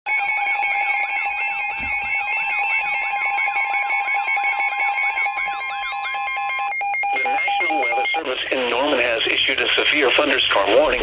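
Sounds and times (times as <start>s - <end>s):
steady warning tone: 0.1s - 8.3s
pulsing beep: 0.8s - 8.3s.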